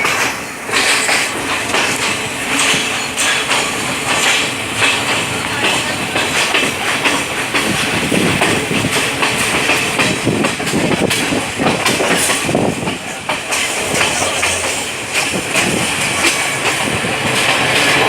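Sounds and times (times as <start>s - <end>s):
train passing rumble: 0.0s - 18.0s
wheels clattering over rail joints: 0.0s - 18.0s.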